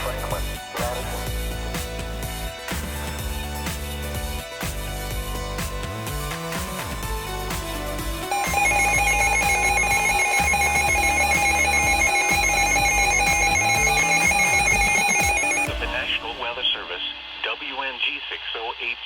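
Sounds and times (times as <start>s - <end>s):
background music: 0.0s - 18.0s
pulsing electronic alert tone: 8.3s - 15.8s.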